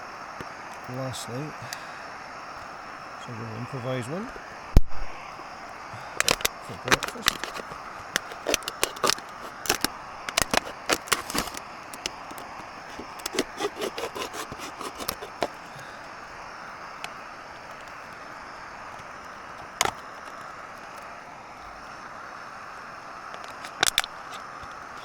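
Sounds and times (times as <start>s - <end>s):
steady hiss: 0.0s - 25.0s
crackles and scrapes of handling: 6.0s - 15.8s, 18.9s - 21.1s, 23.4s - 25.0s.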